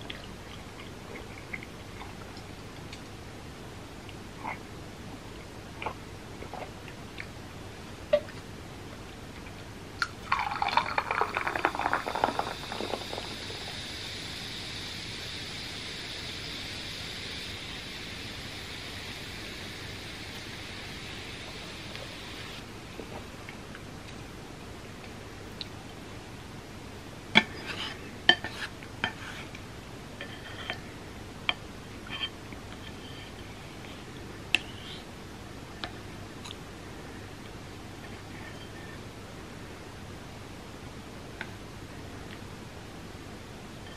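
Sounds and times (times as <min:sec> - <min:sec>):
steady hiss: 0:09.7 - 0:43.9
drink poured into a glass: 0:10.3 - 0:13.6.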